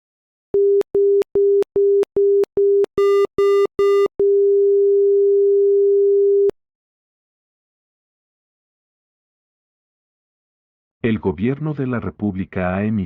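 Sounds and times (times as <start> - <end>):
short low beeps: 0.6 - 4.5.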